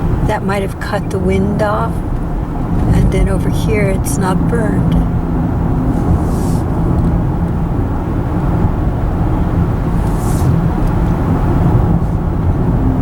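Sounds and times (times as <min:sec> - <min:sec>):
car road noise from inside: 0:00.0 - 0:13.0
brief hisses: 0:06.0 - 0:06.6, 0:10.0 - 0:10.6.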